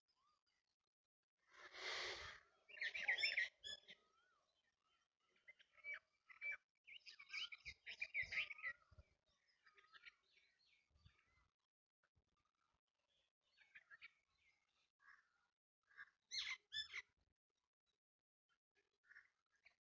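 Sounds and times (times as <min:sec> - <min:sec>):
small birds chirping: 0:01.5 - 0:11.5, 0:12.4 - 0:17.2.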